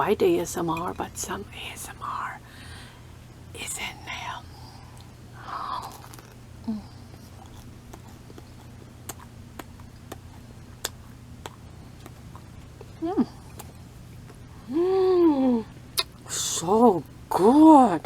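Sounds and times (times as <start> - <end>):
chewing crusty bread: 5.0 - 14.5.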